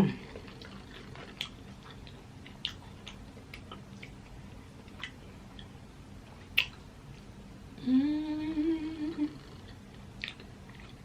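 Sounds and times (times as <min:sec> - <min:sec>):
wet mouth smacks: 0:06.5 - 0:06.8.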